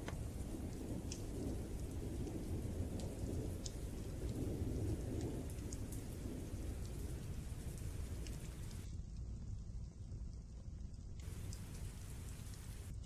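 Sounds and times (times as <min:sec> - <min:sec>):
rolling thunder: 0:00.0 - 0:08.8
faint crackles: 0:00.0 - 0:13.0
steady rain: 0:00.0 - 0:13.0.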